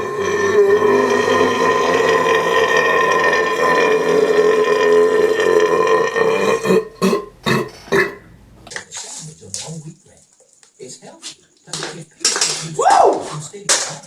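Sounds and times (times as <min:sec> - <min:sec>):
man burping: 0:00.0 - 0:08.3.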